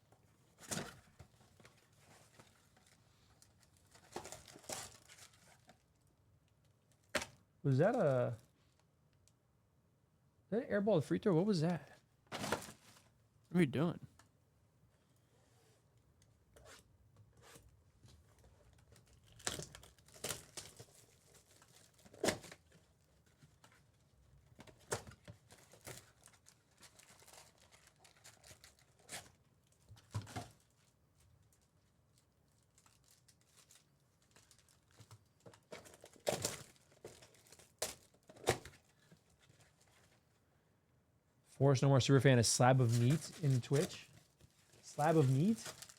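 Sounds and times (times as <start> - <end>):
card pack wrappers tearing and crinkling: 3.9 - 5.7, 19.2 - 22.6, 42.9 - 44.1, 44.7 - 45.9.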